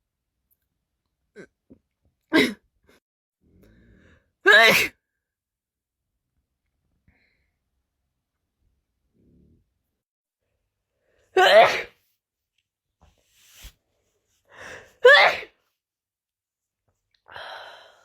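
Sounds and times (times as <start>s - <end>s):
person sneezing: 4.5s - 5.0s, 11.4s - 12.0s, 15.0s - 15.6s
soft breathy sound: 17.2s - 18.0s.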